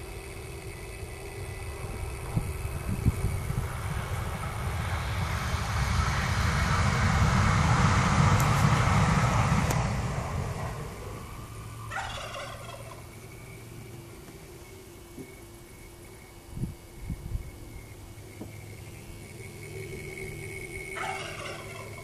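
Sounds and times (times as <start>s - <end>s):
wiper motor running roughly: 0.0s - 12.0s
high-pitched squeal: 0.0s - 13.6s, 18.6s - 22.0s.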